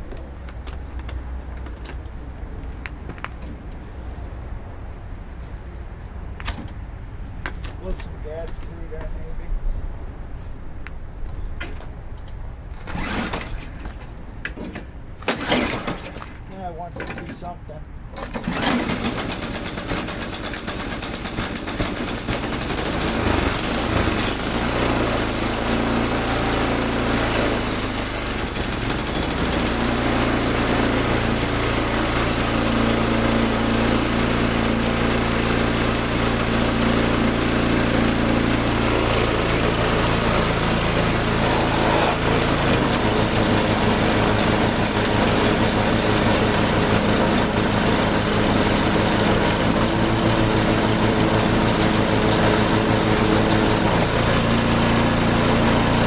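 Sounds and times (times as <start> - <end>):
snow blower engine running: 12.8 - 13.8, 15.2 - 16.4, 18.2 - 56.0.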